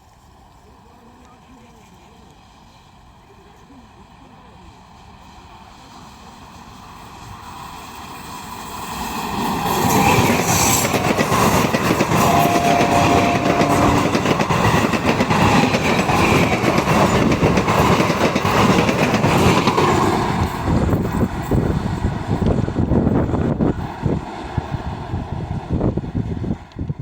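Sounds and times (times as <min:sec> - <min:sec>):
train passing at speed: 0:00.1 - 0:27.0
wheels clacking over rail joints: 0:09.3 - 0:21.7.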